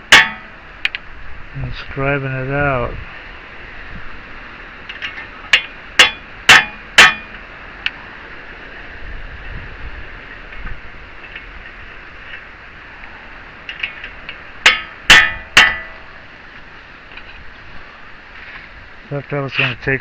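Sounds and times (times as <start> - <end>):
hammer blows on metal: 0.0 - 0.7, 5.4 - 7.5, 14.6 - 16.2.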